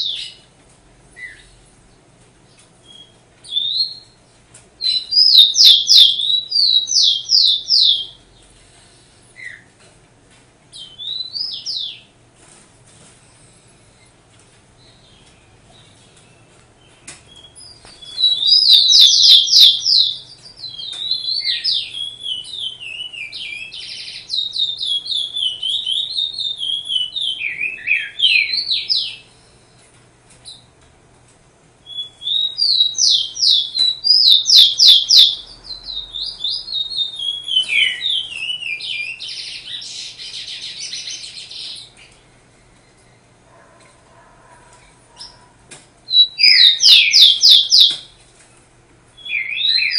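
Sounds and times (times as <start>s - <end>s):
songbird singing trills: 0.0s - 0.4s, 2.5s - 8.5s, 10.7s - 12.1s, 14.8s - 29.7s, 31.8s - 42.1s, 46.1s - 48.2s, 49.2s - 49.9s.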